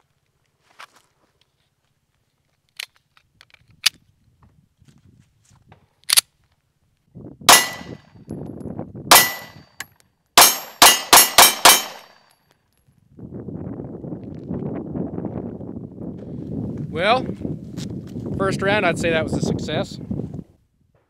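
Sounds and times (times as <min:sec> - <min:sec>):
pistol shots: 0:07.5 - 0:08.0, 0:09.1 - 0:09.6, 0:10.4 - 0:12.2
steel targets ringing: 0:07.5 - 0:08.0, 0:09.1 - 0:09.6, 0:10.4 - 0:12.2.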